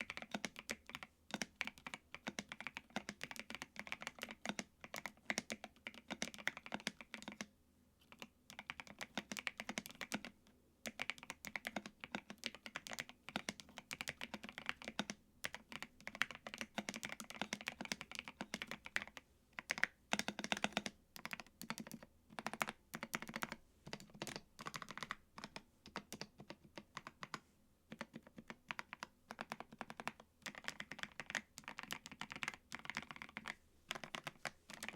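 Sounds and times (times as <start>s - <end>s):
mechanical keyboard typing: 0.0s - 34.9s.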